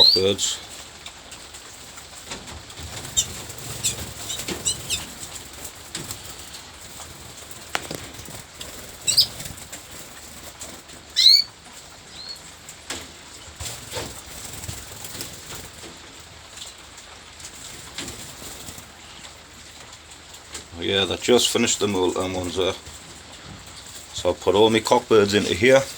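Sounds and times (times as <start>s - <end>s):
canaries chirping: 0.0s - 16.6s, 20.8s - 25.9s
wings fluttering: 0.0s - 25.9s.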